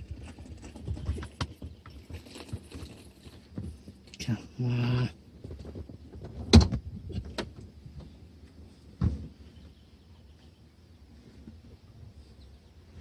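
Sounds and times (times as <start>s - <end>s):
knocks and thumps: 5.4s - 8.1s, 9.0s - 9.4s.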